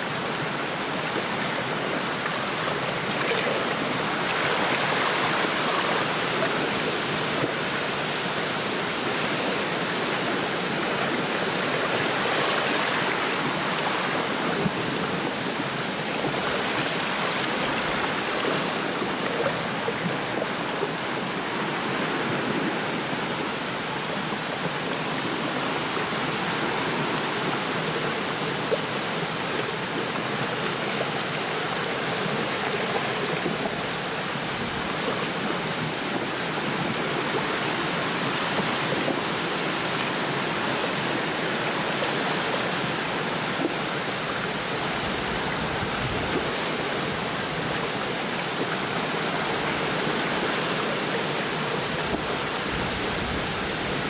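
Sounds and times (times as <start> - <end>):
small waves lapping at shore: 0.0 - 54.0
wind through reeds: 0.0 - 54.0.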